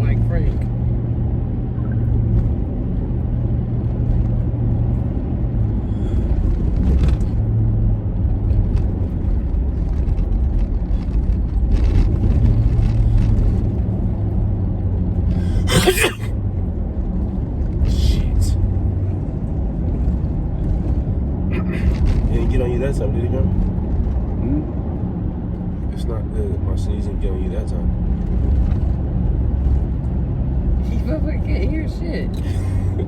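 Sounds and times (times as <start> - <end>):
car interior rumble: 0.0 - 33.0
person sneezing: 15.4 - 16.3.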